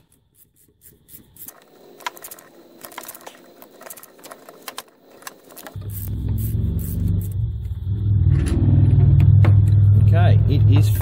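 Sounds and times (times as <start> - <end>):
ratcheting spanner clicking: 0.0 - 7.4.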